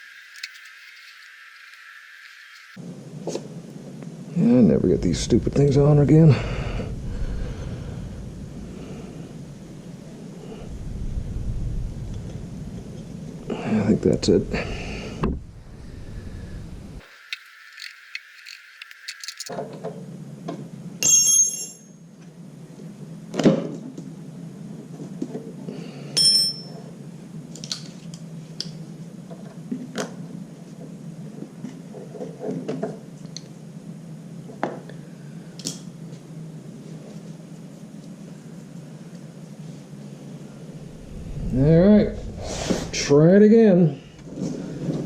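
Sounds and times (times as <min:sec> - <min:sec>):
metal tools clinking: 0:00.3 - 0:01.3, 0:17.1 - 0:19.5
steady low hum: 0:02.7 - 0:19.5, 0:35.0 - 0:45.0
scattered clicks: 0:17.0 - 0:19.5.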